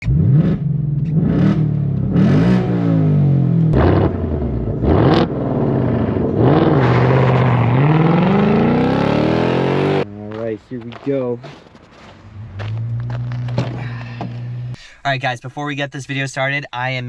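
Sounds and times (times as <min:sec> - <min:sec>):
car engine revving: 0:00.0 - 0:10.1, 0:12.2 - 0:14.8.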